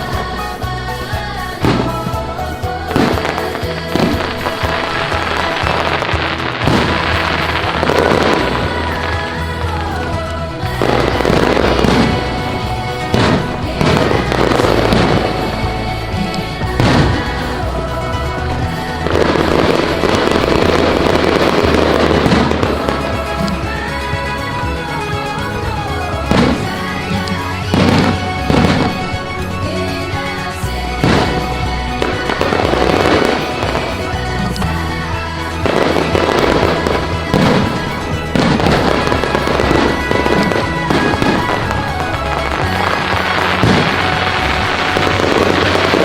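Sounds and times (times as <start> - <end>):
fireworks crackling: 0.0 - 46.0
music playing: 0.0 - 46.0.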